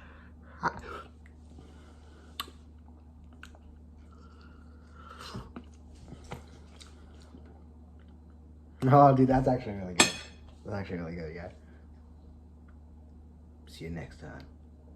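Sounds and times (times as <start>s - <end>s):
faint steady hum: 0.0s - 14.9s
person chewing: 2.3s - 8.2s.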